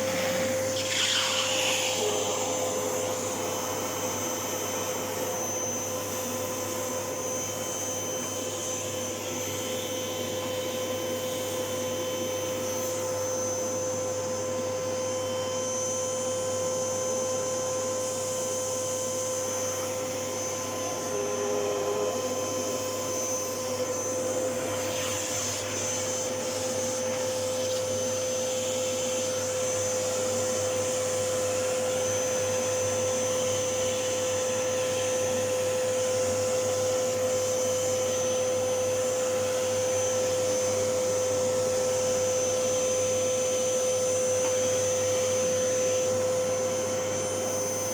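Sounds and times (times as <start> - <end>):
vacuum cleaner running: 0.0 - 47.9.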